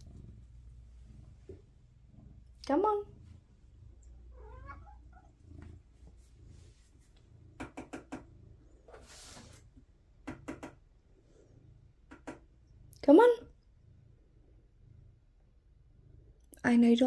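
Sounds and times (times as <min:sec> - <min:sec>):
faint cat call: 0:04.3 - 0:05.3
sharp taps: 0:07.6 - 0:08.3, 0:12.1 - 0:12.4.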